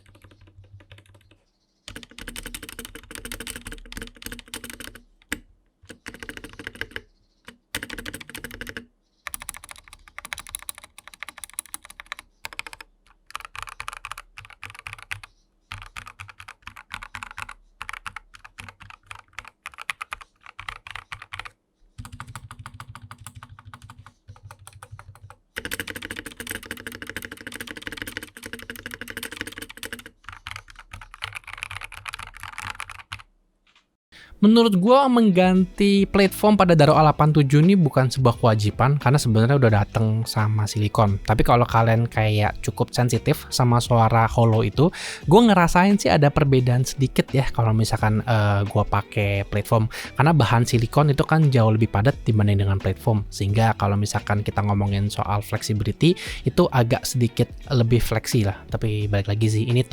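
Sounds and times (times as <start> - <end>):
mechanical keyboard typing: 0.0 - 33.8.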